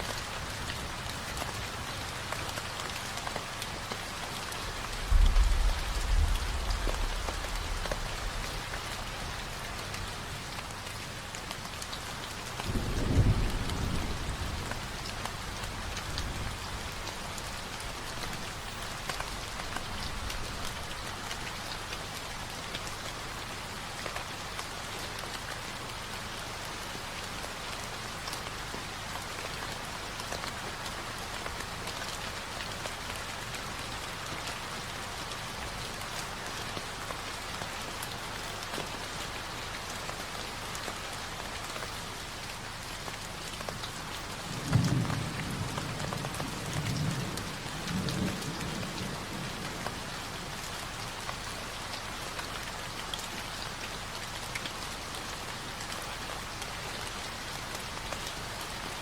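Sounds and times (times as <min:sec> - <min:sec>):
rain pattering: 0:00.0 - 0:59.0
low thunder rumble: 0:04.9 - 0:09.6, 0:12.7 - 0:20.9.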